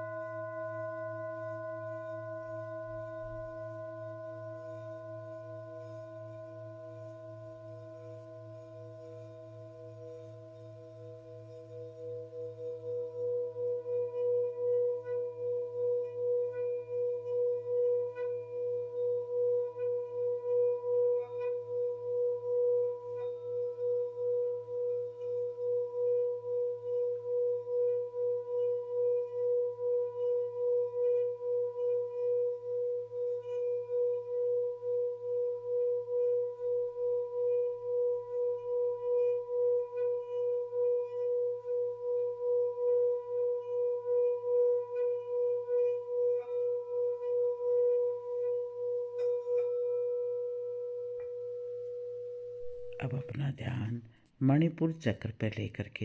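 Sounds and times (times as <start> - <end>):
singing bowl tone: 0.0 - 53.4.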